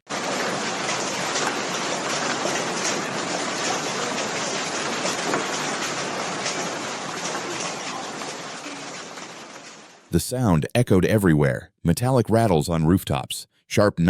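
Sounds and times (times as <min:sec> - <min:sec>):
hail pelting down: 0:00.1 - 0:10.2.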